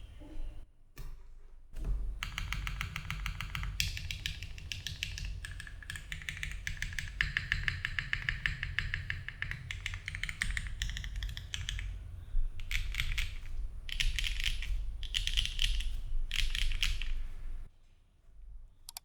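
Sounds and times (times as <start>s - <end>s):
mechanical keyboard typing: 2.2s - 12.0s, 12.6s - 17.7s.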